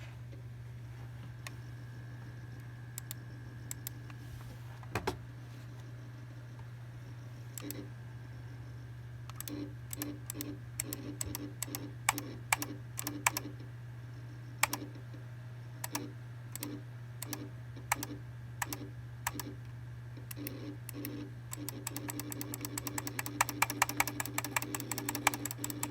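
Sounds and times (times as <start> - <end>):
steady low hum: 0.0 - 25.9
computer crackling clicks: 20.3 - 25.9.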